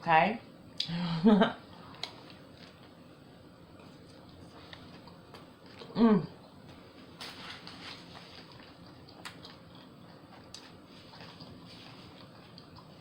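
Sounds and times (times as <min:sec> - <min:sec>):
chewing sandwich: 0:03.7 - 0:13.0.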